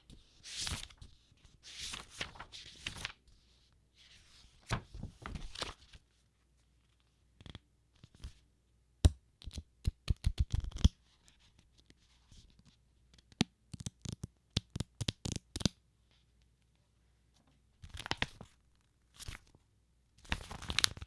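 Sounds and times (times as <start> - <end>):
book pages turning: 0.5 - 1.1, 1.7 - 3.2, 4.3 - 6.0, 20.2 - 21.0.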